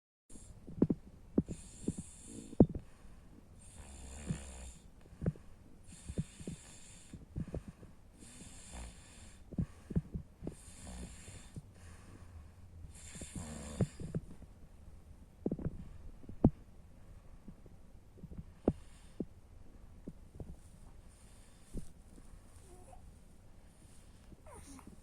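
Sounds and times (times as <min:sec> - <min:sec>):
person snoring: 0:03.6 - 0:04.8, 0:08.2 - 0:09.4, 0:10.6 - 0:11.6, 0:12.9 - 0:14.0, 0:24.5 - 0:24.9.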